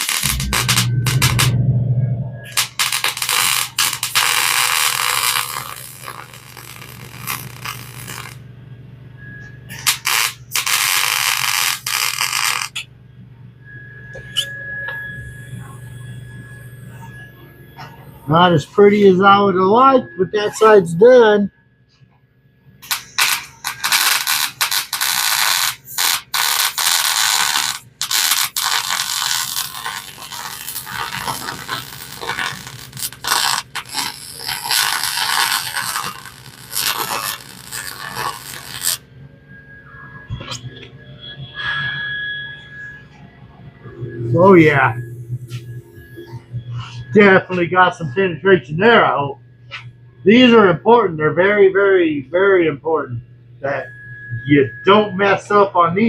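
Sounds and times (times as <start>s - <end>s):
welding arc crackling and sizzling: 0.0s - 1.6s, 2.4s - 8.6s, 9.2s - 12.9s, 22.8s - 39.0s
steady low hum: 0.0s - 56.0s.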